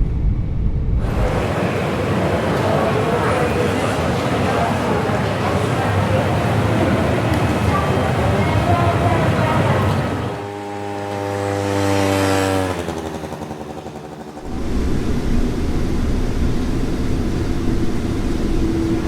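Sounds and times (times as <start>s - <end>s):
steady low rumble: 0.0s - 2.3s, 14.4s - 19.0s.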